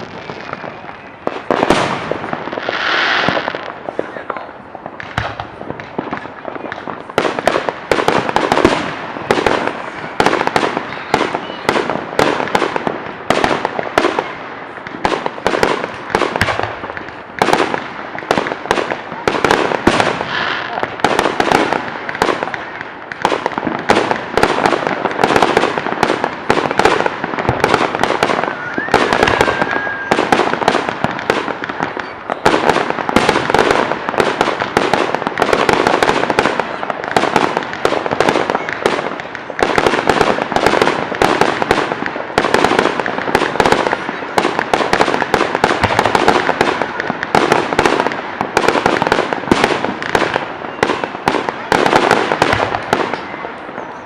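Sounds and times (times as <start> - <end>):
fireworks bangs and crackles: 0.0 - 54.0
firework whistle: 28.2 - 30.7.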